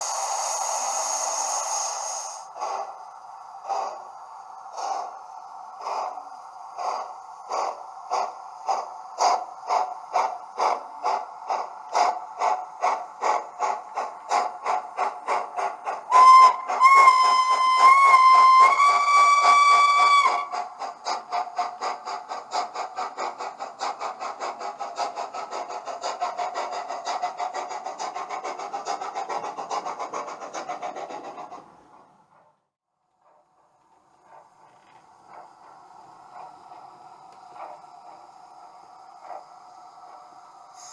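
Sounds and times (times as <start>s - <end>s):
steam locomotive chuffing: 0.0s - 40.9s
steam whistle blowing: 16.1s - 20.6s.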